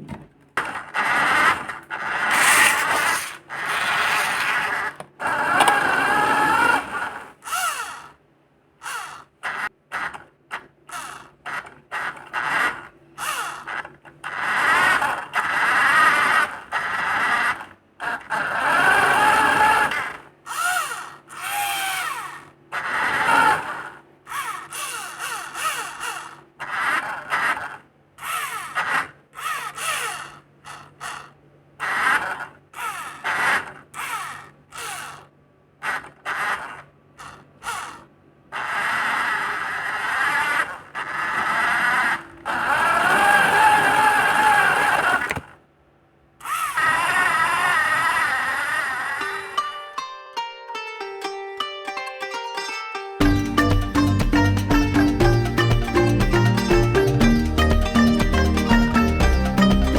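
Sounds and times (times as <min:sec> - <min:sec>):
electric gear motors whining: 0:00.0 - 0:08.2, 0:08.8 - 0:45.6, 0:46.4 - 0:49.6, 0:53.2 - 0:59.9
gear and wheel rattle: 0:00.6 - 0:08.1.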